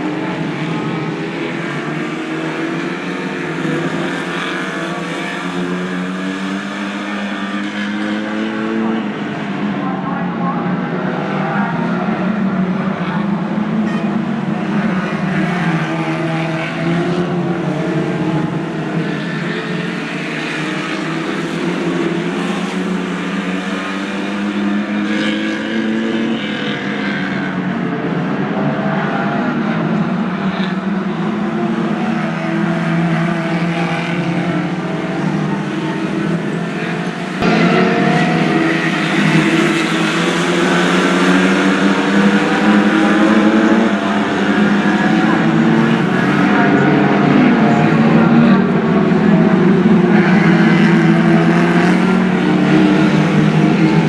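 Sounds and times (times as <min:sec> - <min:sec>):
racing car engines: 0:00.0 - 0:54.0.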